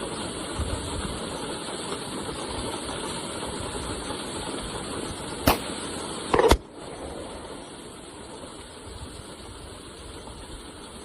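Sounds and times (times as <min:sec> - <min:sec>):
steady background noise: 0:00.0 - 0:11.0
pistol shots: 0:05.5 - 0:05.8.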